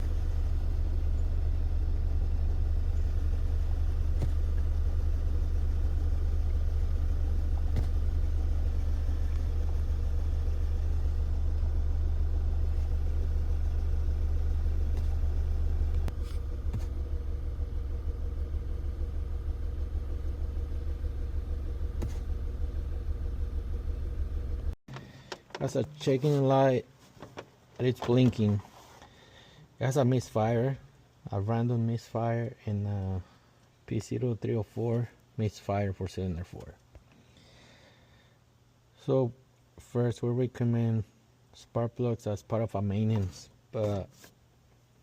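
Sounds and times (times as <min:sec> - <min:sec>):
car engine idling unevenly: 0:00.0 - 0:25.3.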